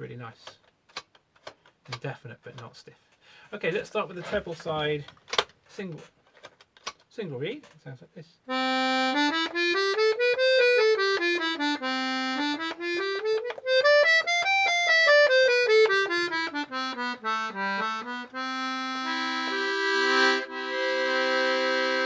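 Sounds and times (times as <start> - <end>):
accordion playing: 8.5 - 22.0.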